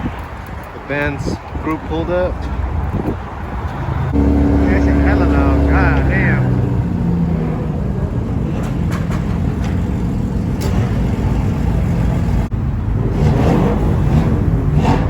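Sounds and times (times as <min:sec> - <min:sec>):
car engine running at low revs: 0:04.1 - 0:15.0.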